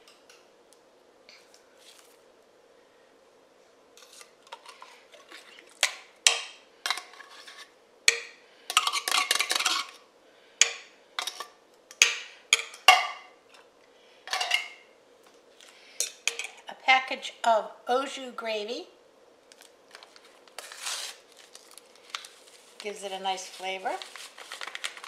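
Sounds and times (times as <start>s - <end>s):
metal utensil scraping a can: 6.9s - 7.7s.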